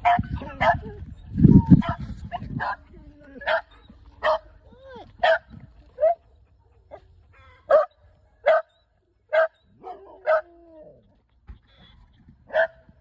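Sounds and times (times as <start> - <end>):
dog barking: 3.5 - 4.5, 5.2 - 6.2, 7.7 - 8.7, 9.3 - 10.5, 12.5 - 12.8.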